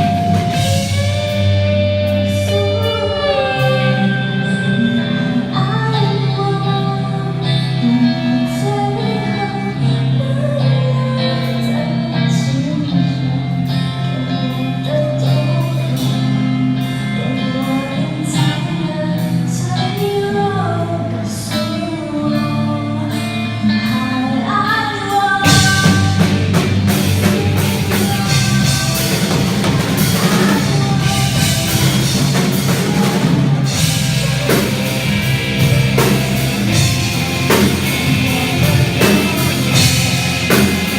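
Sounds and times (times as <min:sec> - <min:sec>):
drums: 0:00.0 - 0:40.9
person singing: 0:00.0 - 0:40.9
sustained instrument chords: 0:25.5 - 0:40.9.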